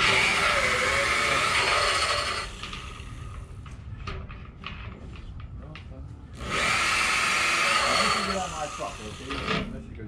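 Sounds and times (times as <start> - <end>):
electric grinder grinding metal: 0.0 - 3.2, 6.4 - 9.7.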